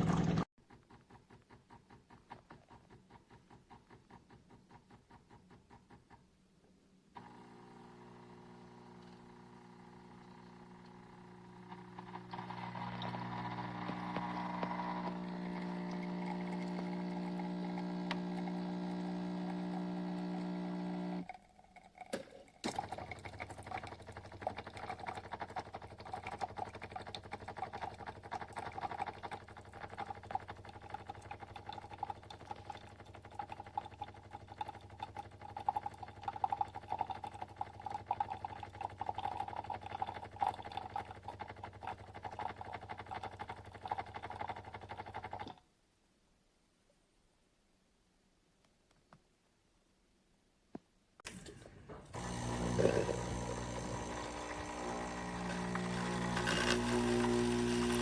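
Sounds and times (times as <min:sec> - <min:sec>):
espresso machine pump humming: 0:00.0 - 0:00.5, 0:07.2 - 0:21.4, 0:51.3 - 0:58.0
uneven crackling sputtering: 0:51.2 - 0:58.0.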